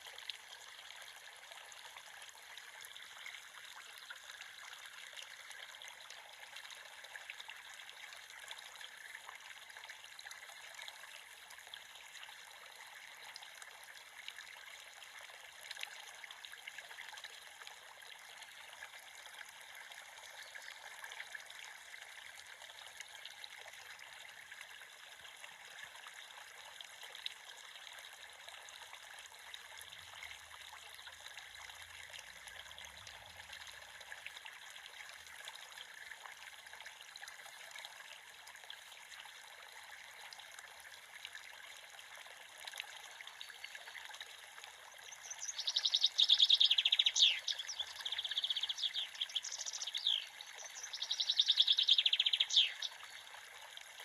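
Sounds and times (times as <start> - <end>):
creek water trickling: 0.0 - 54.0
bird chirping: 45.1 - 53.0.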